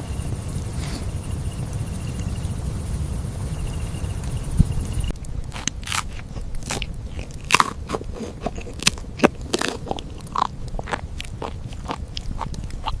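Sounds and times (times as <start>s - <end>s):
crunching crusty bread: 5.2s - 13.0s.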